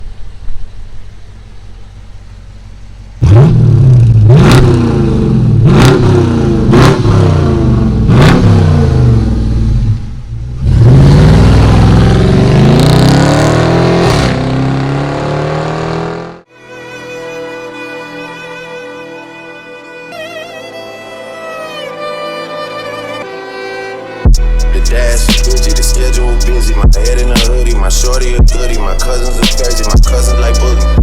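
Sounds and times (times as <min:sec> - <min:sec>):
car engine accelerating hard: 0:00.1 - 0:16.5, 0:24.3 - 0:31.0.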